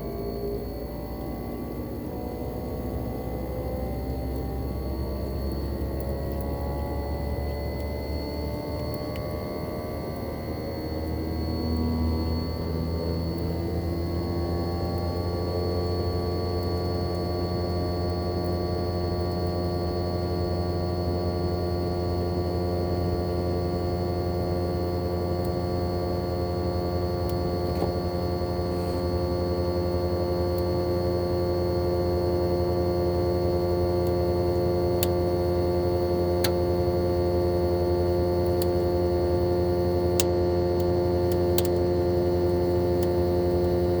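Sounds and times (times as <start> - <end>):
compressor humming and whining: 0.0 - 44.0.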